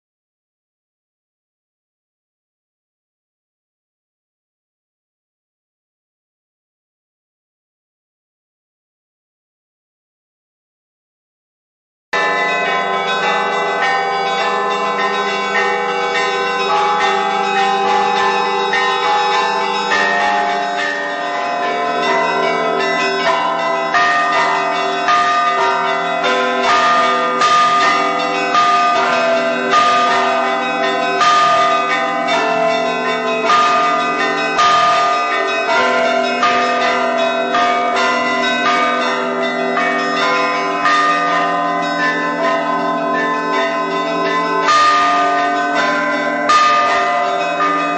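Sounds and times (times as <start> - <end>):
church bells pealing: 12.2 - 47.9.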